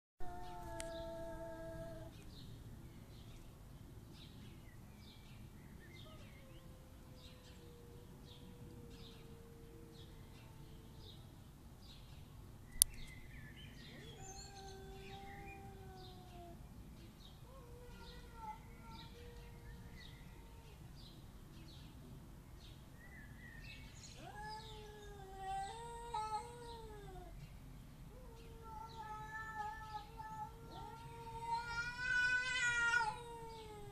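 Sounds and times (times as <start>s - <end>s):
cat yowling: 0.2s - 2.1s, 13.9s - 16.6s, 17.5s - 20.8s, 24.2s - 27.3s, 28.1s - 33.9s
small birds chirping: 0.2s - 33.9s.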